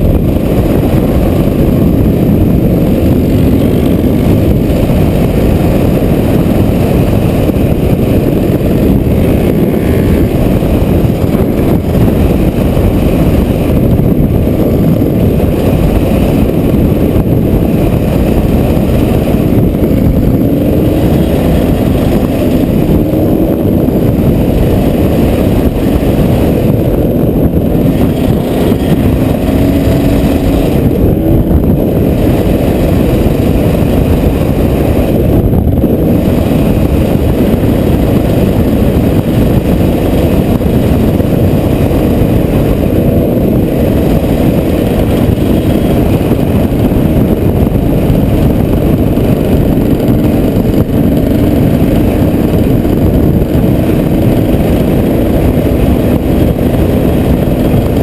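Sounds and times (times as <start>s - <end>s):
strong wind buffeting microphone: 0.0s - 58.0s.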